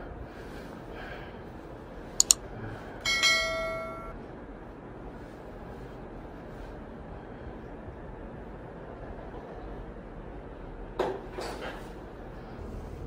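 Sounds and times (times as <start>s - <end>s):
sharp clicks: 2.2s - 2.4s
bell-like chime: 3.1s - 4.2s.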